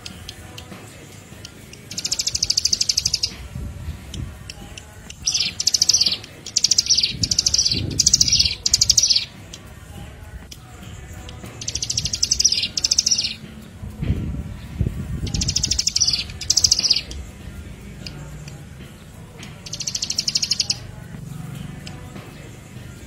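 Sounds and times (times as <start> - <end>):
bird buzzy rattling trill: 0.0 - 23.0
low rumble: 13.5 - 15.6.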